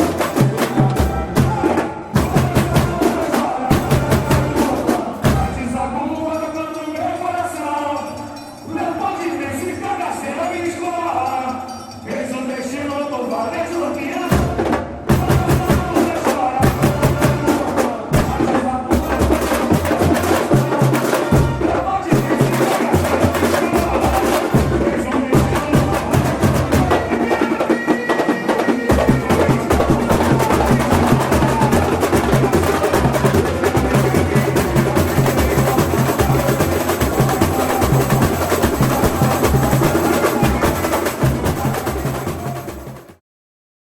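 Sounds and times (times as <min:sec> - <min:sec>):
woodblock-like percussion: 0:16.6 - 0:43.1
sharp higher drum strokes: 0:28.6 - 0:43.2.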